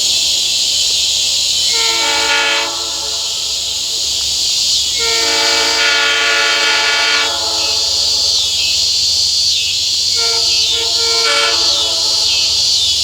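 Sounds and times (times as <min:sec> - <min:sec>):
insects buzzing: 0:00.0 - 0:13.0
locomotive air horn chord: 0:01.6 - 0:04.1, 0:04.8 - 0:08.9, 0:10.1 - 0:13.0.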